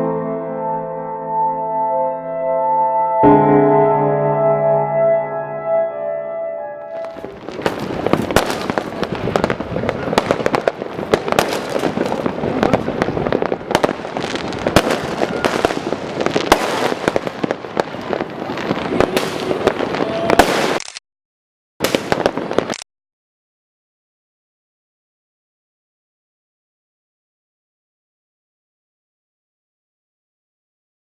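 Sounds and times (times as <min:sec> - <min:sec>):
fireworks and firecrackers popping: 0:06.9 - 0:21.0, 0:21.8 - 0:22.8.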